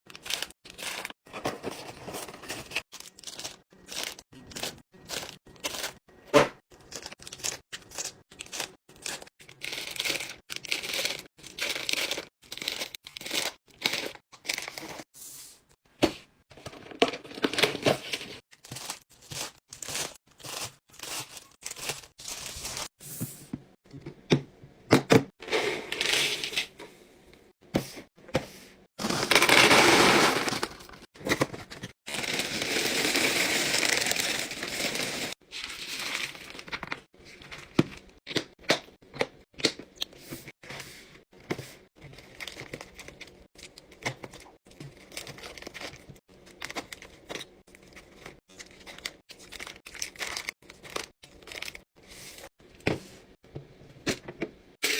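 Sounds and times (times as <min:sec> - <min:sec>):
packaging crinkling and tearing: 0:17.2 - 0:22.9, 0:29.0 - 0:31.0, 0:32.1 - 0:37.6, 0:45.0 - 0:51.8.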